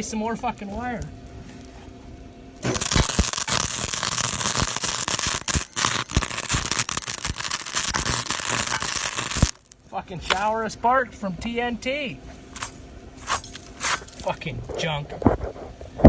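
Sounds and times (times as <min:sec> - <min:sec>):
welder arc crackling: 0:00.0 - 0:10.5.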